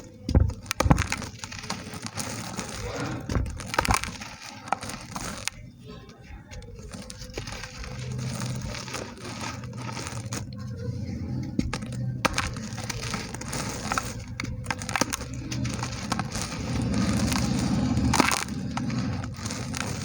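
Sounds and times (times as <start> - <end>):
dry dirt crumbling: 0.0 - 20.0
low steady hum: 0.0 - 20.0.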